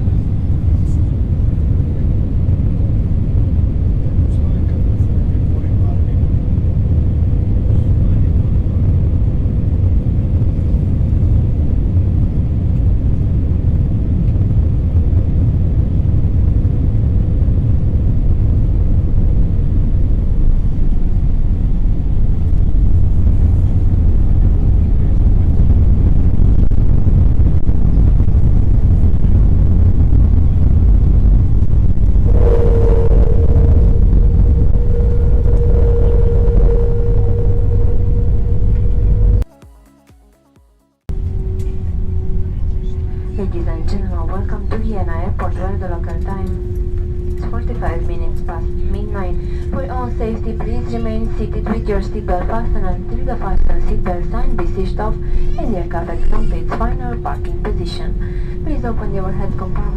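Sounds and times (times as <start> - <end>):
airliner cabin rumble: 0.0 - 39.5, 41.1 - 59.9
steady hum: 0.0 - 39.5, 41.1 - 59.9.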